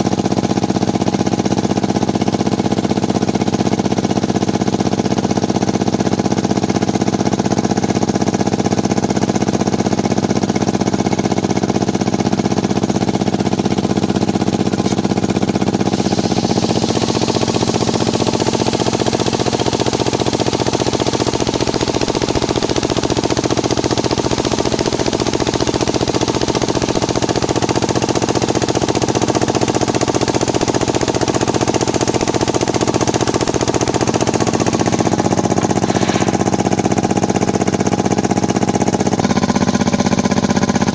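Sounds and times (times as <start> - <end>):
sawmill engine running: 0.0 - 40.9
saw blade cutting wood hiss: 15.7 - 18.9, 35.3 - 36.8.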